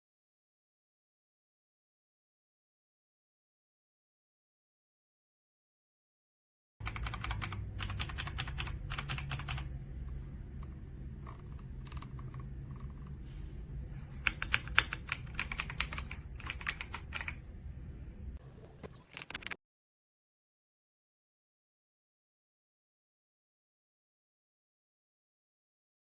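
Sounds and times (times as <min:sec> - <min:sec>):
mechanical keyboard typing: 0:06.8 - 0:13.2, 0:14.2 - 0:17.4, 0:18.8 - 0:19.6.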